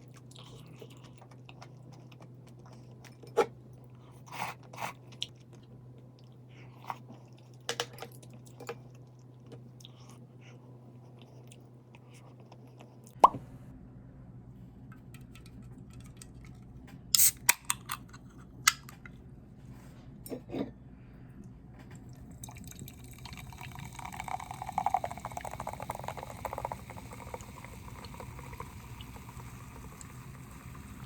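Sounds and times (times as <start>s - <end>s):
liquid pouring: 22.2s - 31.0s.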